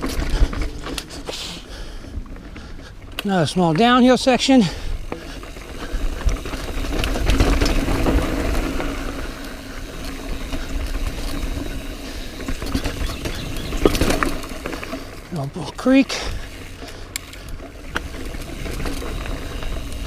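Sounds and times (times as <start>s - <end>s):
wind rumbling on microphone: 0.0s - 3.2s
bike rattling and clicking: 0.0s - 20.0s
tyres running over dirt: 0.0s - 20.0s.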